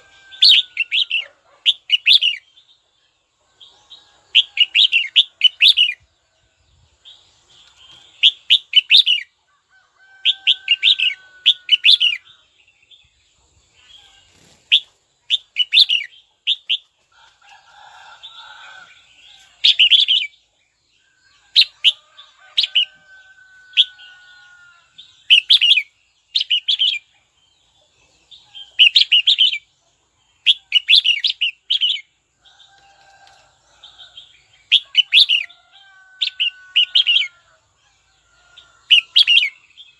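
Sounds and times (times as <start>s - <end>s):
bird chattering song: 0.0s - 2.8s, 3.6s - 6.1s, 7.1s - 9.4s, 13.8s - 16.9s, 18.2s - 20.4s, 21.0s - 22.9s, 23.8s - 32.1s, 34.0s - 35.6s, 38.6s - 39.9s.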